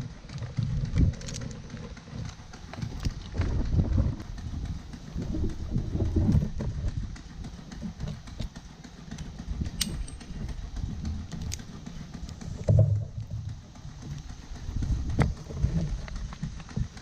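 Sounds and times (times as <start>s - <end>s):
low rumbling handling noise: 0.0s - 17.0s
sharp metallic click: 9.8s - 10.3s.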